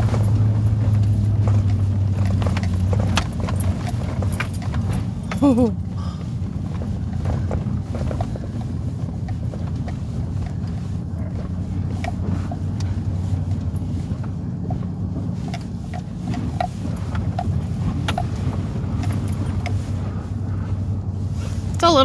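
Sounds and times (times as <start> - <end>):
vehicle engine running: 0.0 - 22.0
light clicks and ticks: 6.7 - 19.9.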